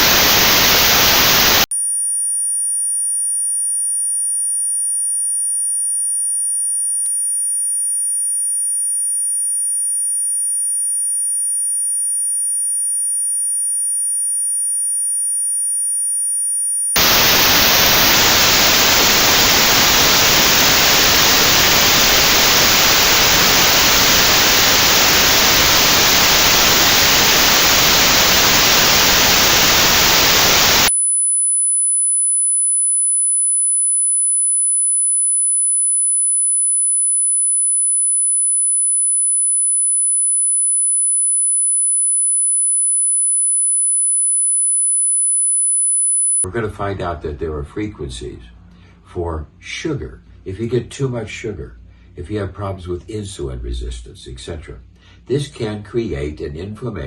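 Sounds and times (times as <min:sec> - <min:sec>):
notched white noise hiss: 0:00.0 - 0:01.7, 0:17.0 - 0:30.9
high-pitched pure test tone: 0:00.0 - 0:01.8, 0:17.0 - 0:46.5.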